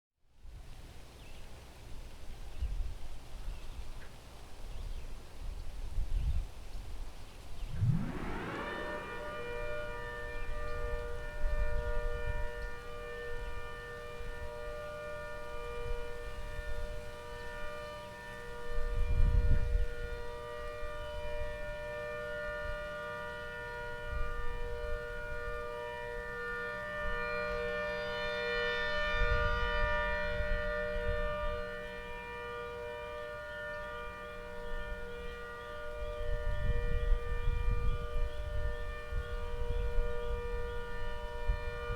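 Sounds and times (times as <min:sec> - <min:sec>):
low rumbles: 0:07.6 - 0:11.5
distant siren wailing: 0:07.6 - 0:41.9.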